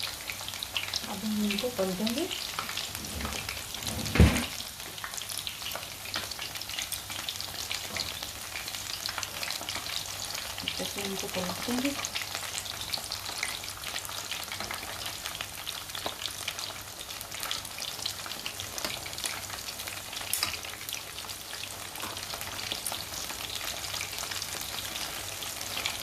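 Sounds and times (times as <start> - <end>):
food deep-frying in oil: 0.0 - 26.0.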